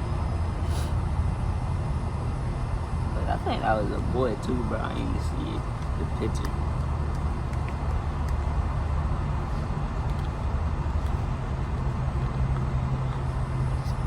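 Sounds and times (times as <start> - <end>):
noisy hiss: 0.0 - 7.0
low rumble and hum: 0.0 - 14.0.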